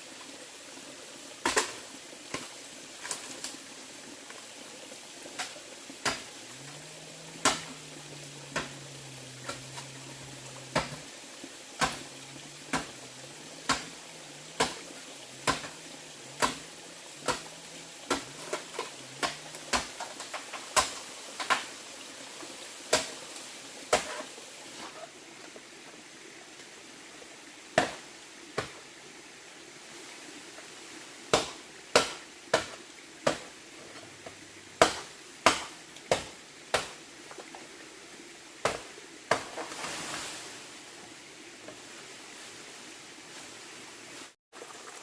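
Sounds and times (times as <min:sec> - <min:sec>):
hand tool strikes: 0:07.4 - 0:08.8, 0:11.8 - 0:12.1, 0:15.4 - 0:15.8.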